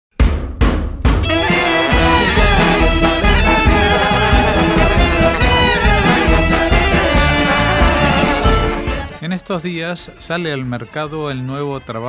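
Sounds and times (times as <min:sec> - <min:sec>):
drum kit: 0:00.1 - 0:09.3
bass: 0:00.2 - 0:12.0
wind instruments melody: 0:01.2 - 0:11.0.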